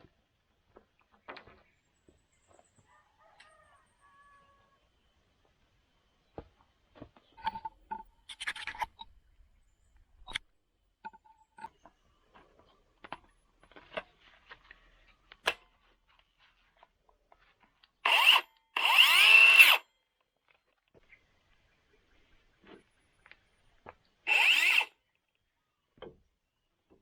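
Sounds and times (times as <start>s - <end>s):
knocks and clicks handling wood: 0.7s - 2.6s, 26.0s - 27.0s
circular saw running: 18.1s - 19.8s, 24.3s - 24.9s.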